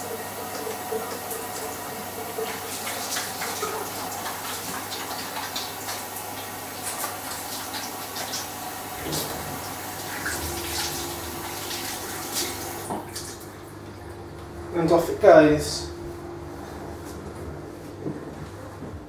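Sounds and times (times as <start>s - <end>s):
water hissing into dishwasher: 0.0s - 13.4s
low hum: 13.5s - 19.0s.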